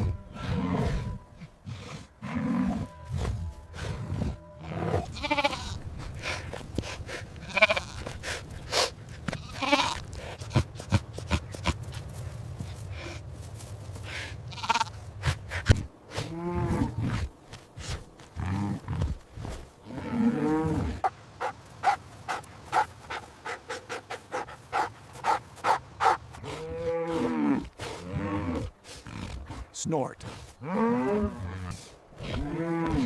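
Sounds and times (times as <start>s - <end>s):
farm animals calling: 0.0s - 6.4s, 7.1s - 12.0s, 14.1s - 17.0s.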